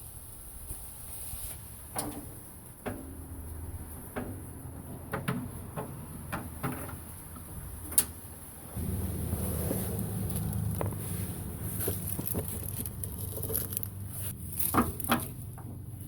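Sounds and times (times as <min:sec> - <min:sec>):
low rumble: 0:08.7 - 0:14.6
metal tools clinking: 0:11.8 - 0:15.3.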